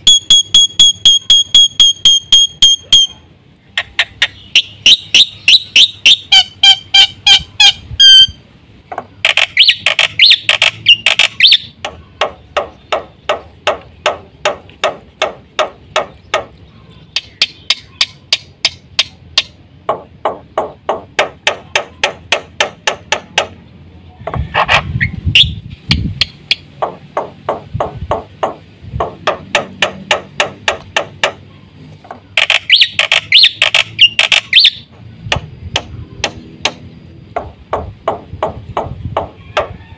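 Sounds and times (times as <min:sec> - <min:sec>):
bird chattering whistles: 0:03.8 - 0:08.4, 0:09.2 - 0:13.2, 0:32.4 - 0:34.9
bird clicking notes: 0:09.2 - 0:20.4, 0:32.3 - 0:36.8.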